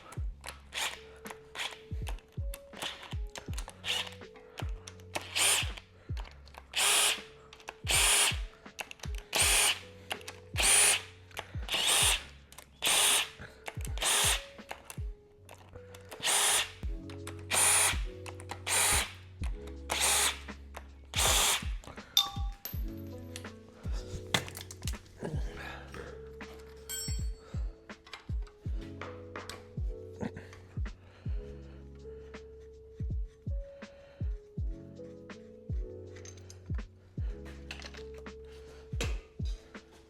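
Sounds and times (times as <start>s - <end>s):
background music: 0.0s - 40.0s
cordless power tool bursts: 2.8s - 5.8s, 6.7s - 11.1s, 11.7s - 14.6s, 16.2s - 16.8s, 17.5s - 19.2s, 19.9s - 20.5s, 21.2s - 21.9s.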